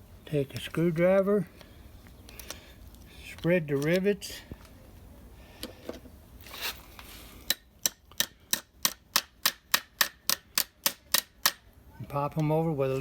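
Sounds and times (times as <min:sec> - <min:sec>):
small hammer tapping rivets: 0:07.5 - 0:11.6.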